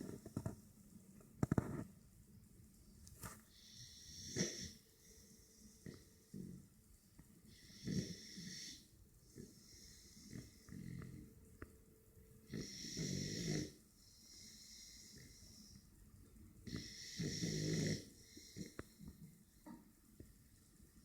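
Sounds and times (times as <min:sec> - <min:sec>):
soft snoring breaths: 0:03.2 - 0:20.4
puppy snoring with whistle: 0:03.5 - 0:06.7, 0:07.5 - 0:11.3, 0:12.5 - 0:15.8, 0:16.6 - 0:18.8.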